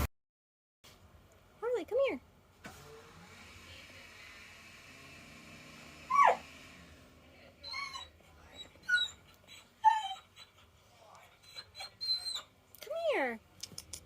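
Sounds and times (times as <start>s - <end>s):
dog whining: 6.0s - 6.5s, 7.6s - 12.6s
dog whimpers and yips: 6.1s - 6.4s, 7.6s - 10.7s, 11.3s - 12.6s.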